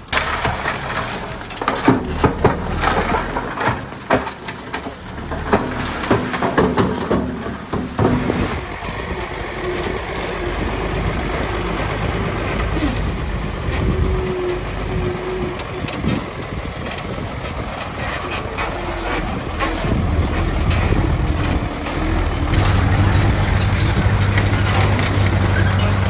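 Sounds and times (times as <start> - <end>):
diesel construction machinery running: 0.0 - 26.0
hiss burst: 12.8 - 13.5.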